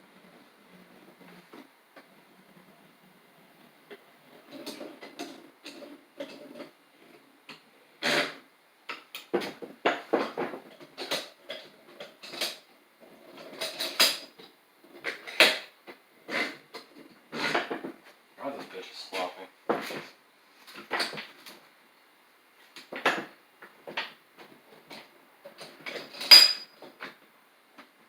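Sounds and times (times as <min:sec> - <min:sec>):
metal clanks and scraping of vise: 0:04.5 - 0:06.7, 0:13.3 - 0:14.3, 0:24.9 - 0:27.2.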